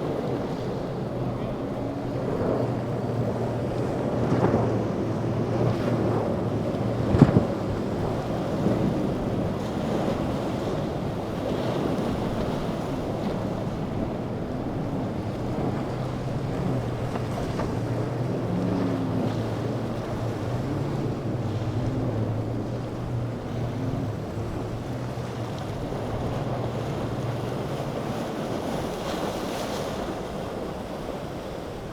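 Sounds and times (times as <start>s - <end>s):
boat engines running: 0.0s - 31.9s
waves: 0.0s - 31.9s
wind buffeting microphone: 0.0s - 31.9s.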